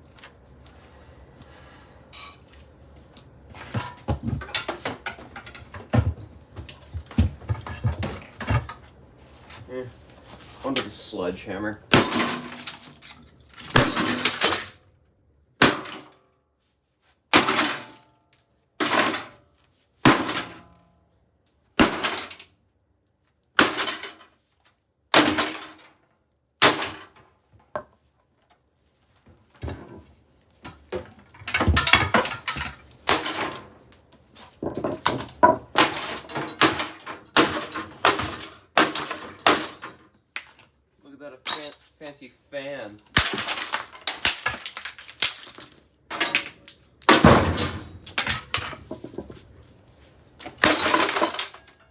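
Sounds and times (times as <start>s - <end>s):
breaking glass: 11.9s - 14.8s, 41.5s - 41.8s, 43.1s - 48.7s, 50.6s - 51.7s
sledgehammer smashing microwave: 11.9s - 14.8s, 15.6s - 16.2s, 17.3s - 18.0s, 18.8s - 19.4s, 20.0s - 20.8s, 21.8s - 22.4s, 23.6s - 24.2s, 25.1s - 25.9s, 26.6s - 27.2s, 30.9s - 33.8s, 34.7s - 40.0s, 43.1s - 49.2s, 50.5s - 51.7s.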